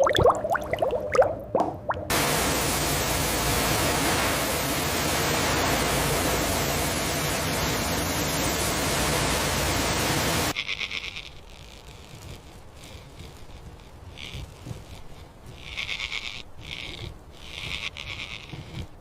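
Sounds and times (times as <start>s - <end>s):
loud rushing noise: 2.1s - 10.5s.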